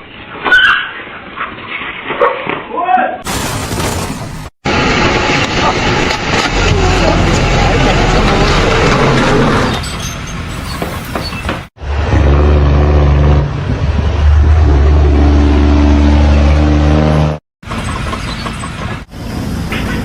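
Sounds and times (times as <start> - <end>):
large engine humming: 4.7 - 10.7.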